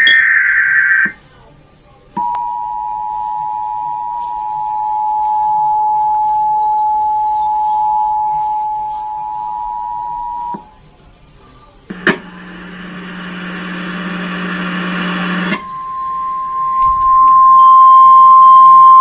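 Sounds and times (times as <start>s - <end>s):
two-tone alert signal: 2.2s - 10.7s, 15.5s - 19.0s.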